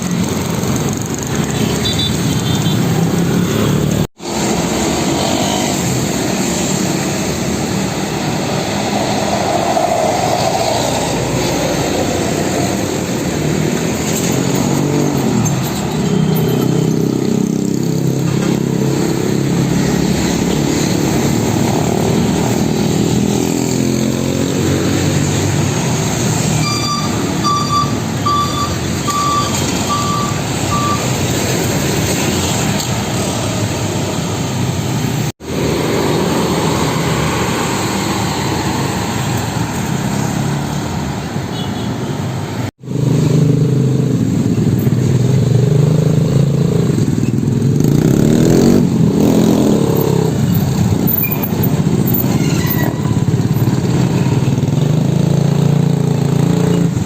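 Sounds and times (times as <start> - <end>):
diesel truck engines: 2.8 - 41.6
reversing beeper: 26.6 - 31.3.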